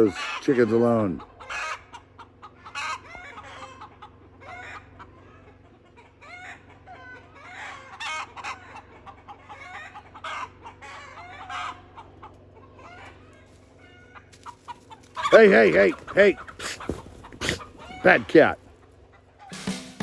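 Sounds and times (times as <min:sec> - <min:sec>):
chickens clucking and squawking: 0:00.0 - 0:20.0.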